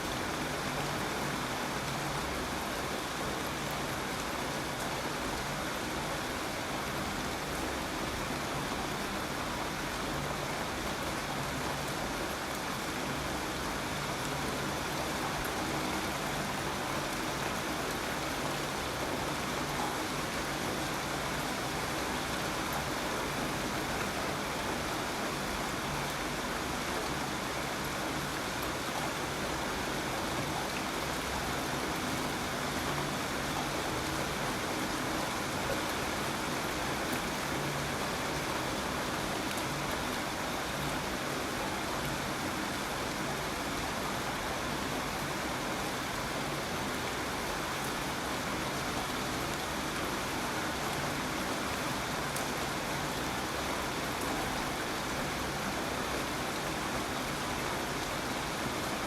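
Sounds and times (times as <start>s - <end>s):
steady rainfall: 0.0s - 59.0s.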